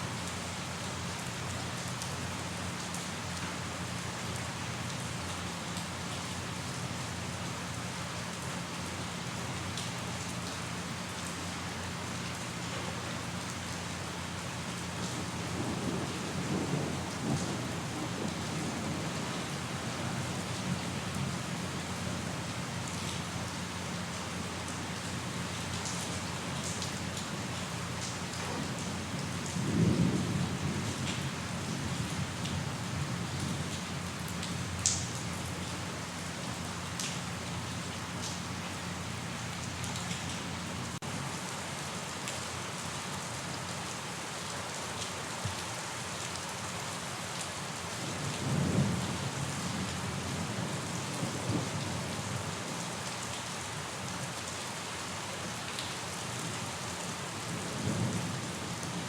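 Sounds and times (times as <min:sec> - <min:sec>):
steady rainfall: 0:00.0 - 0:59.0
low thunder rumbles: 0:15.2 - 0:20.4, 0:28.4 - 0:33.6, 0:48.2 - 0:51.9.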